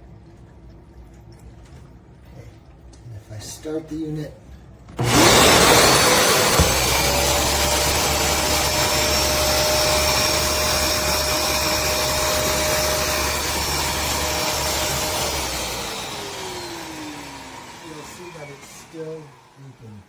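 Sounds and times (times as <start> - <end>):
carpet cleaner motor whining: 5.0 - 20.0.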